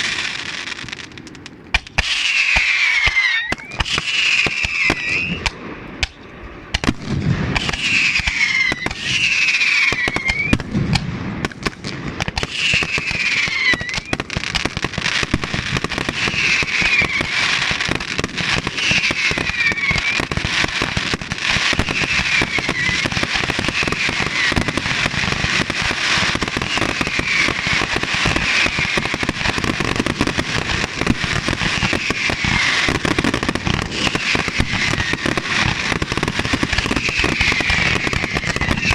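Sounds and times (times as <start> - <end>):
fireworks crackling and popping: 0.0 - 38.9.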